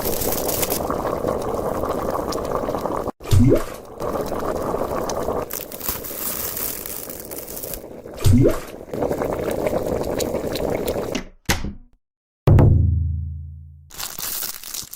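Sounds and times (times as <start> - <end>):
pot simmering and bubbling: 0.0 - 11.2.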